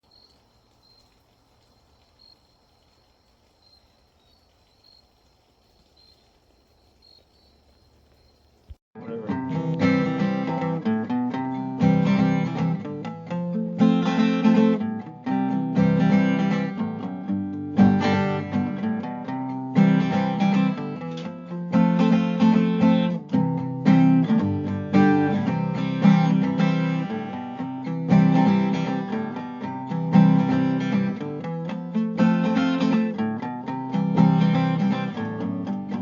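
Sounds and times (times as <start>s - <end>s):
strummed acoustic guitar: 9.0s - 36.0s.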